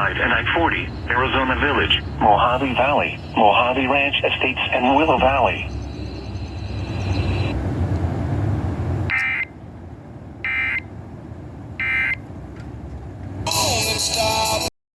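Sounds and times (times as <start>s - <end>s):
digital data bursts: 0.0s - 7.6s
broadcast hiss and rumble: 0.0s - 14.7s.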